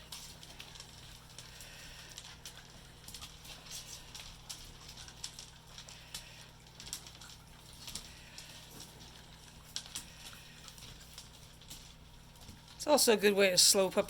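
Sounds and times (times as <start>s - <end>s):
claws and kibble tapping: 0.0s - 14.0s.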